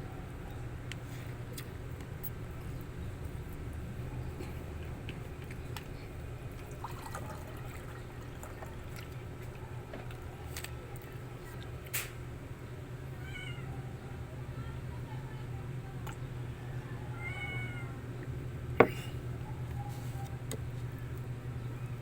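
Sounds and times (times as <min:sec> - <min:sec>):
steady low hum: 0:00.0 - 0:22.0
cat meowing: 0:13.2 - 0:13.8, 0:17.2 - 0:18.0.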